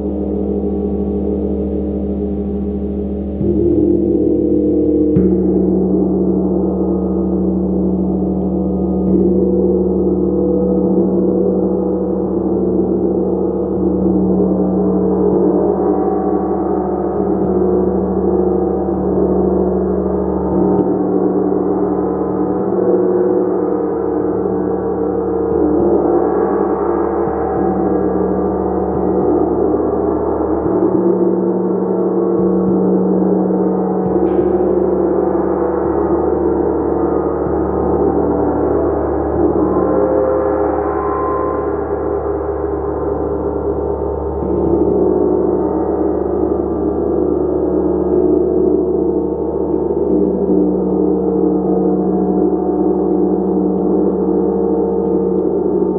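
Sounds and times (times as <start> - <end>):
gong shimmering tones: 0.0 - 14.4, 32.4 - 51.5
low hum: 0.0 - 55.9.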